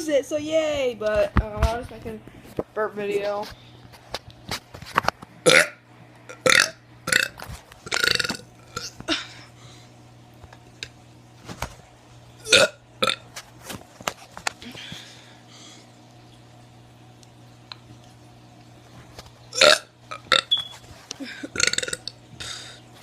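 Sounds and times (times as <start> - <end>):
person burping: 5.4 - 9.4, 12.4 - 13.2, 19.5 - 20.5, 21.2 - 22.1.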